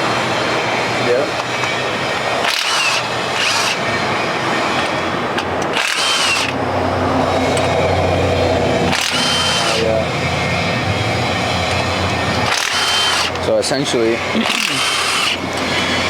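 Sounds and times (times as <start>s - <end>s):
power tool whining: 0.0s - 16.0s
low machine hum: 6.2s - 16.0s.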